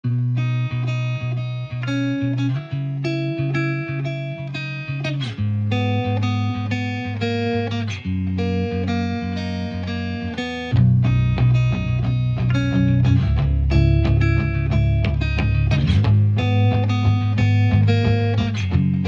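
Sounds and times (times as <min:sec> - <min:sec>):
plucked guitar melody: 0:00.0 - 0:19.0
held bass notes: 0:05.3 - 0:19.0.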